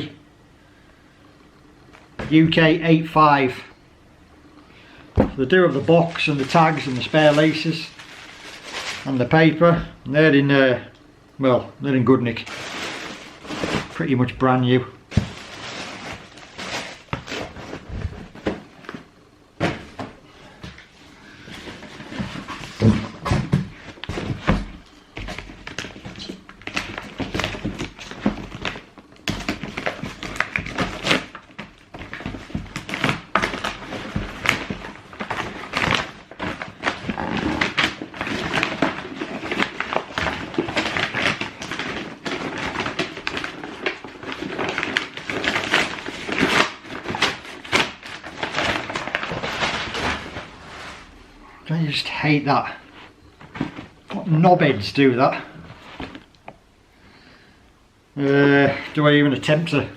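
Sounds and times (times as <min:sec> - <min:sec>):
cardboard and paper rustling: 0:05.2 - 0:09.3, 0:12.4 - 0:14.3, 0:15.1 - 0:51.2, 0:53.4 - 0:54.2.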